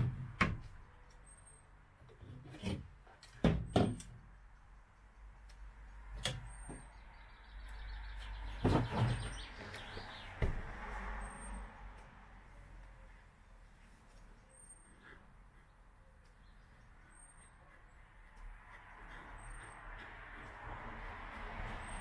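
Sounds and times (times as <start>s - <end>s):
sharp knocks and clunks: 2.5s - 4.2s, 8.6s - 10.9s.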